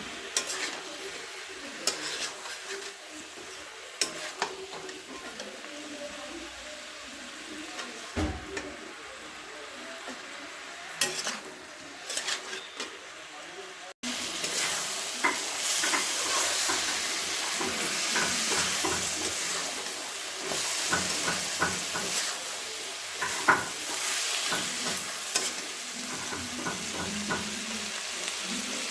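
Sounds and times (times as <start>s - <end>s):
chicken sizzling in a pan: 0.0s - 28.9s
utensil scraping a pan: 0.4s - 1.0s, 1.6s - 5.4s, 11.0s - 13.0s.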